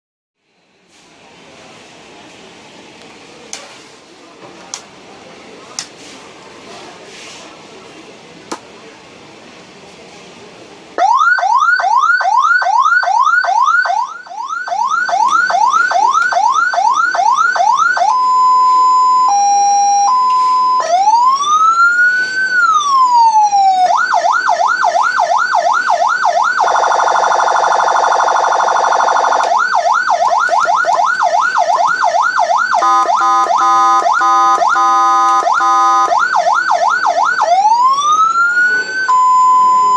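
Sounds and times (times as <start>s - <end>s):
electronic siren cycling tones: 11.0s - 39.9s.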